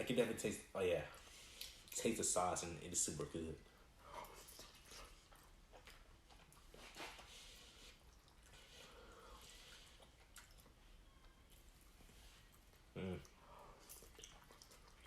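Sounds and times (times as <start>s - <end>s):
soft lip smacks: 1.5s - 2.0s, 4.2s - 11.7s, 12.3s - 15.0s
wet chewing: 4.1s - 15.0s.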